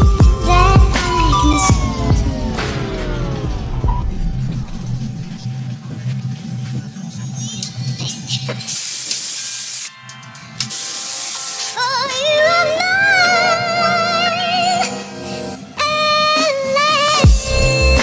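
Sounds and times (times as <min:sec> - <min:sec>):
vibrato vocal melody: 0:00.0 - 0:05.4
hiss bursts: 0:08.7 - 0:09.9, 0:10.6 - 0:11.8.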